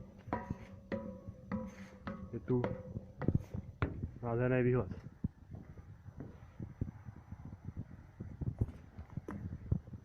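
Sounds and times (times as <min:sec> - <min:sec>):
footsteps: 0:00.0 - 0:04.2, 0:04.8 - 0:07.0
low thumps and knocks: 0:00.0 - 0:04.2, 0:04.9 - 0:10.0.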